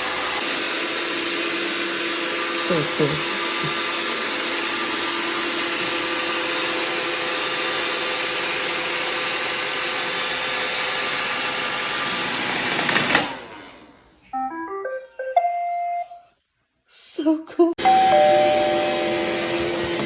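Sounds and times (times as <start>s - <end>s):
robot vacuum whirring: 0.0s - 14.0s, 17.8s - 20.0s
rising electronic beeps: 14.3s - 16.3s.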